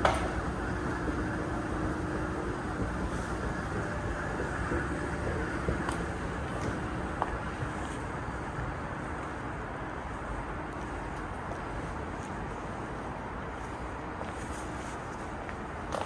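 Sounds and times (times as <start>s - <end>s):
subway train rumbling: 0.0s - 16.0s.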